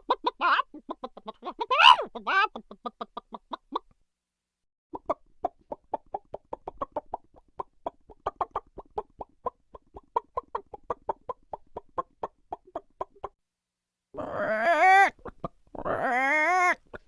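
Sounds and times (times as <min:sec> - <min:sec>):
cartoon chicken clucking: 0:00.0 - 0:03.9, 0:04.9 - 0:13.4, 0:14.2 - 0:17.0.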